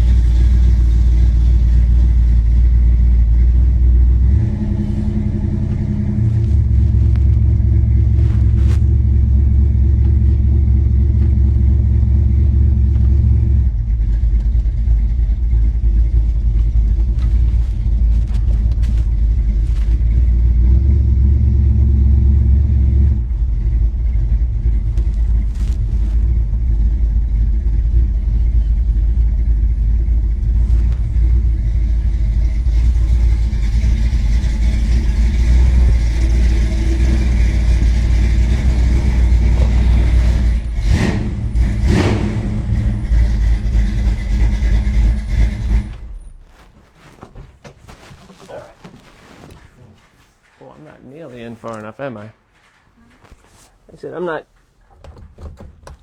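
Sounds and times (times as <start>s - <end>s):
car engine humming: 0.0s - 56.0s.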